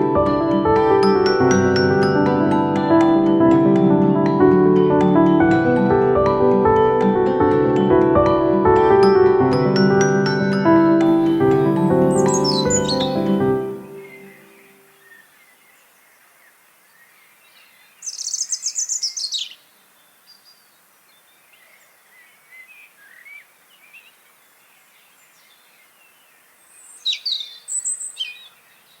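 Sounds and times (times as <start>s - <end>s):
faint steady hiss: 11.0s - 29.0s
small birds chirping: 11.1s - 29.0s
small birds trilling: 11.2s - 29.0s.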